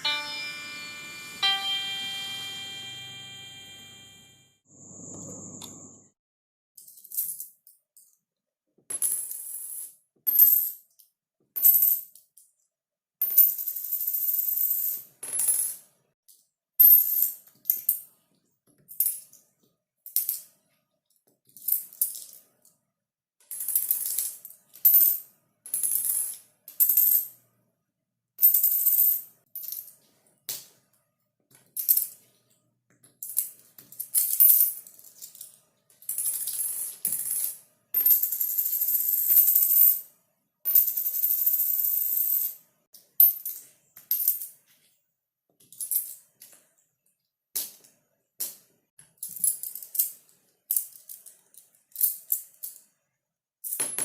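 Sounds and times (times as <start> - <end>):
coins dropping onto hard surface: 36.1 - 39.6.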